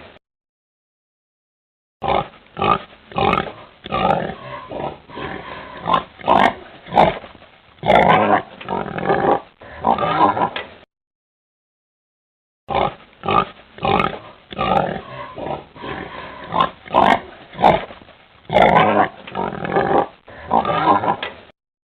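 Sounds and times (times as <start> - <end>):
pig grunting and oinking: 2.0 - 10.6, 12.7 - 21.3.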